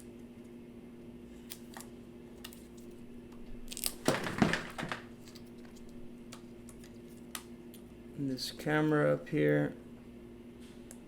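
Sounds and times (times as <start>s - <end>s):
steady low hum: 0.0s - 11.0s
crinkling handling noise: 1.7s - 7.4s.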